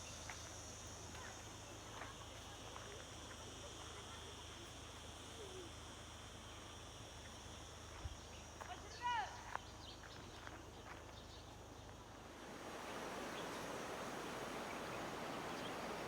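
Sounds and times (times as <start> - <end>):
high insect chorus: 0.0 - 16.0.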